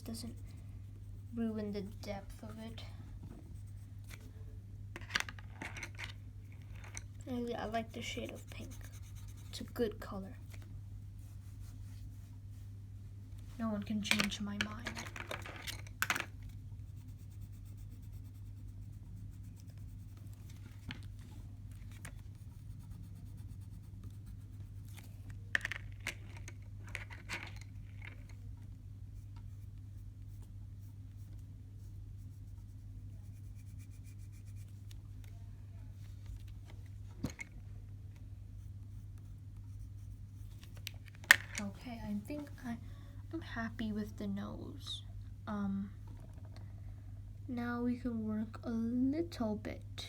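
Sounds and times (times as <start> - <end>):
steady low hum: 0.0 - 50.0
pencil scratching on paper: 7.6 - 10.0, 16.8 - 20.9, 22.1 - 25.1, 29.1 - 34.8, 38.6 - 40.5.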